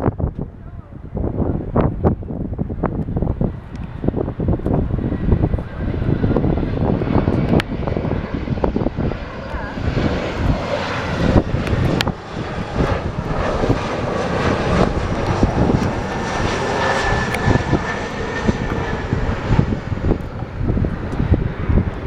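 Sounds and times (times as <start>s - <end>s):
airplane engine running: 0.1s - 22.0s
thin steady whine: 4.7s - 22.0s.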